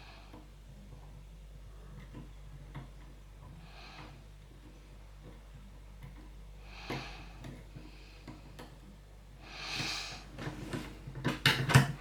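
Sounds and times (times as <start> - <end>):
person breathing out through nose: 9.4 - 10.3.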